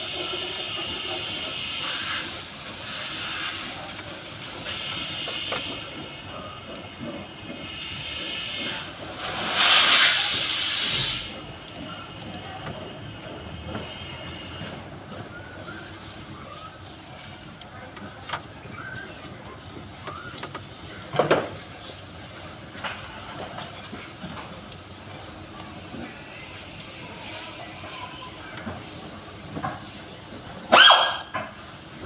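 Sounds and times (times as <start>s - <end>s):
compressed air hissing: 0.0s - 6.2s, 7.3s - 11.5s.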